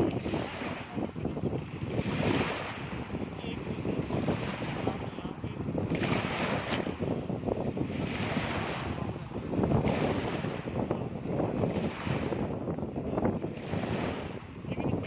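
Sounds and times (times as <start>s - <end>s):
waves washing against shore: 0.0s - 15.0s
wind buffeting microphone: 0.0s - 15.0s.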